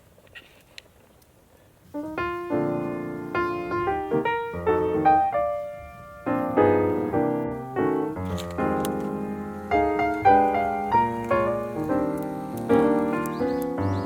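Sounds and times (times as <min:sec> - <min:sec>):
piano notes and chords: 0:01.9 - 0:14.0.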